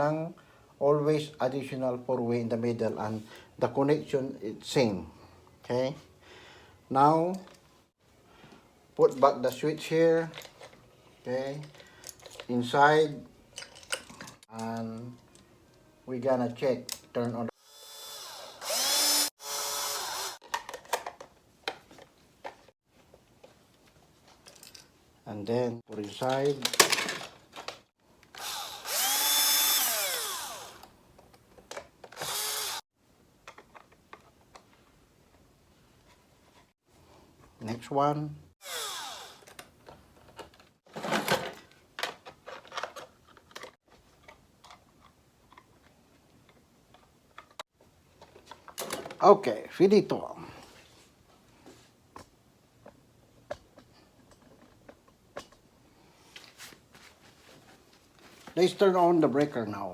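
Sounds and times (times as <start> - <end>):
cordless drill driving screws: 17.7 - 20.4, 28.3 - 30.9, 32.1 - 32.8, 38.6 - 39.6.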